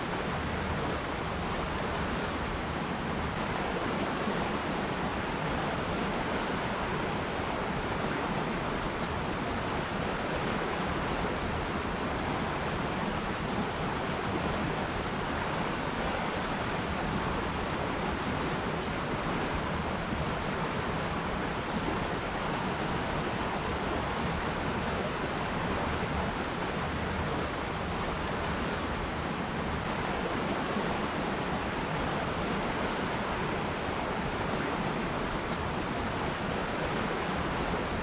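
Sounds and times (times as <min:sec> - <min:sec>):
river water flowing: 0:00.0 - 0:38.0.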